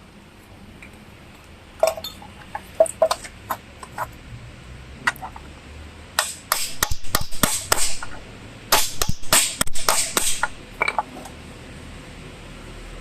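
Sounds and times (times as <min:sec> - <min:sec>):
hammer striking metal: 0:06.2 - 0:11.0.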